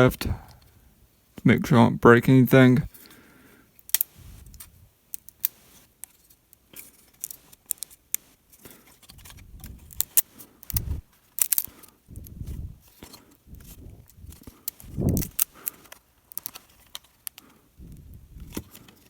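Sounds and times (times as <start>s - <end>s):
plastic clicking and snapping: 9.0s - 12.4s, 13.0s - 19.0s.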